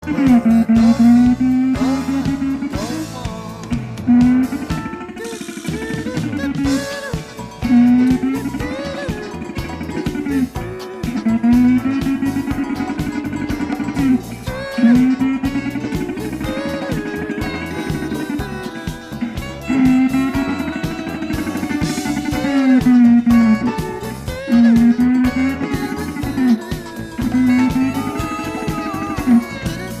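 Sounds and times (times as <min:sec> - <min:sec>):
plucked guitar music: 0:00.0 - 0:30.0
steady beat: 0:00.0 - 0:30.0.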